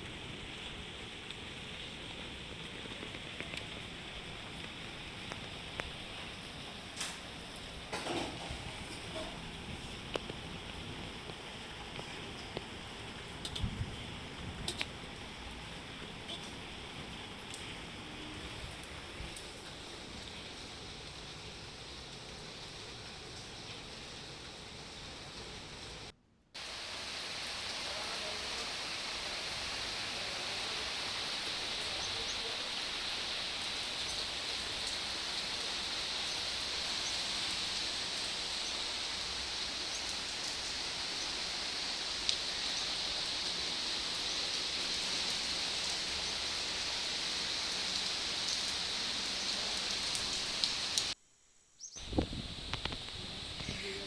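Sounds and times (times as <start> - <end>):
heavy rain: 0.0 - 51.2, 52.0 - 54.0
raindrop ticks: 2.1 - 8.1, 8.9 - 14.0, 14.6 - 15.2, 17.4 - 17.7, 39.8 - 45.5, 52.2 - 53.8.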